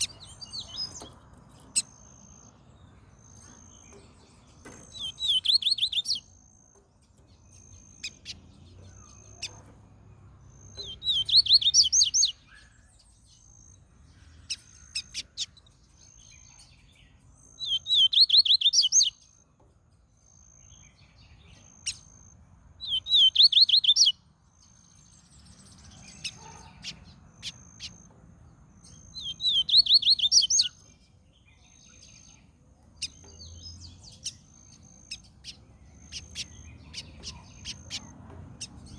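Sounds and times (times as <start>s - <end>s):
bird singing rapid high notes: 0.0s - 9.8s, 10.4s - 12.6s, 17.5s - 19.3s, 22.8s - 24.2s, 28.9s - 30.9s.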